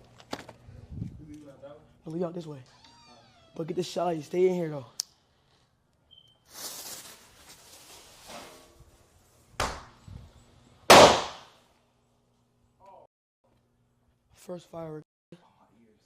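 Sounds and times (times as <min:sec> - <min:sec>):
firework bangs: 0:10.9 - 0:11.5.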